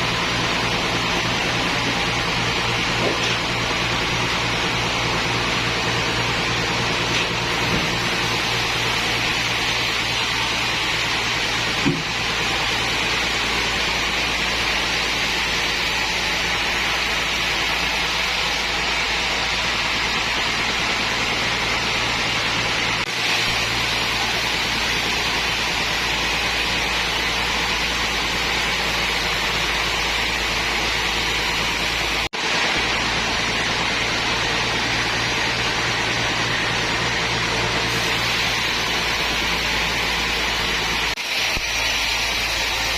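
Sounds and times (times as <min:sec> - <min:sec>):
sawmill machinery running: 0:00.0 - 0:42.9.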